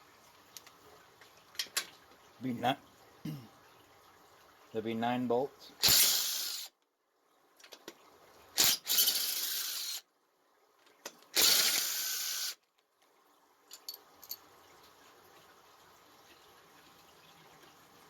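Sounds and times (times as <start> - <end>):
power tool bursts: 5.8 - 6.7, 8.6 - 10.0, 11.4 - 12.6.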